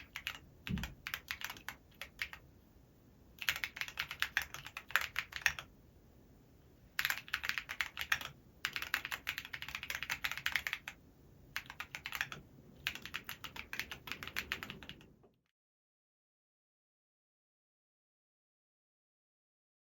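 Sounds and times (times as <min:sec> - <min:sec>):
typing on mechanical keyboard: 0:00.0 - 0:02.4, 0:03.4 - 0:05.7, 0:07.0 - 0:11.0, 0:11.6 - 0:15.2.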